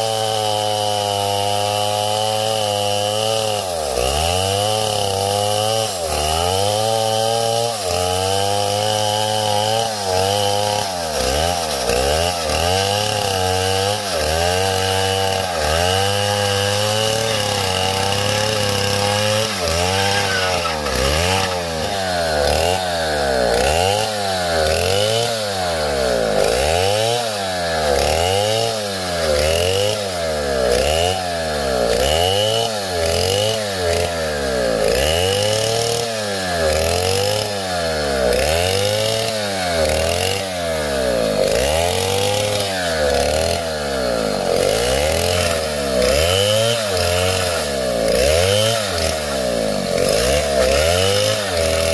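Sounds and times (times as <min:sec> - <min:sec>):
chainsaw engine running: 0:00.0 - 0:51.9.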